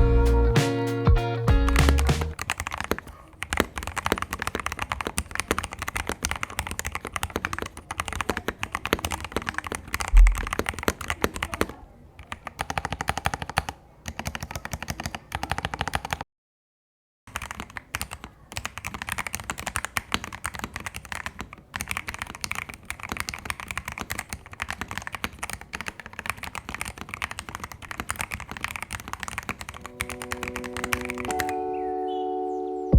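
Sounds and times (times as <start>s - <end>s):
background music: 0.0s - 2.4s, 29.8s - 32.9s
mechanical keyboard typing: 1.7s - 16.2s, 17.3s - 31.7s
deep thud: 10.2s - 10.5s.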